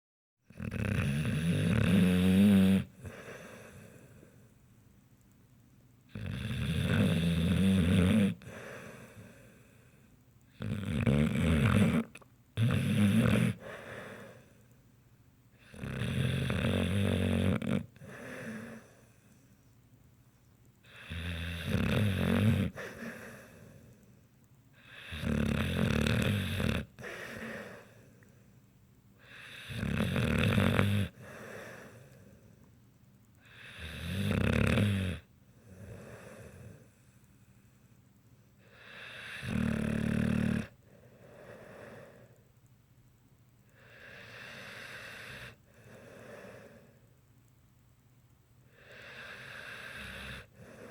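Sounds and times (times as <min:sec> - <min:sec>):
person snoring: 0:00.5 - 0:04.2, 0:06.1 - 0:09.4, 0:10.6 - 0:14.5, 0:15.6 - 0:19.0, 0:20.9 - 0:23.8, 0:24.8 - 0:28.0, 0:29.2 - 0:32.2, 0:33.4 - 0:36.9, 0:38.6 - 0:42.3, 0:48.7 - 0:50.9
quiet breathing: 0:02.8 - 0:05.6, 0:08.0 - 0:10.8, 0:13.0 - 0:15.9, 0:16.7 - 0:21.4, 0:22.2 - 0:25.3, 0:26.1 - 0:29.9, 0:30.7 - 0:34.2, 0:35.2 - 0:42.8, 0:43.6 - 0:47.6, 0:48.6 - 0:50.9.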